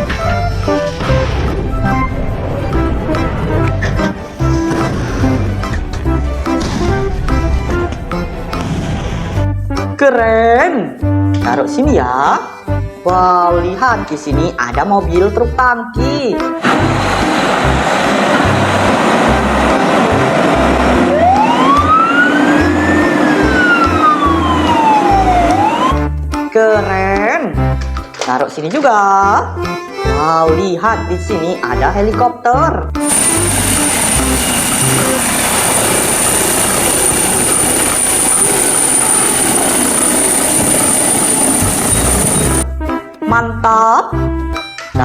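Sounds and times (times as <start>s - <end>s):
background music with steady beat: 0.0s - 38.8s, 39.8s - 45.0s
helicopter rotor whirring: 17.1s - 26.0s, 33.0s - 42.6s
siren wailing: 19.8s - 26.1s, 33.0s - 42.6s.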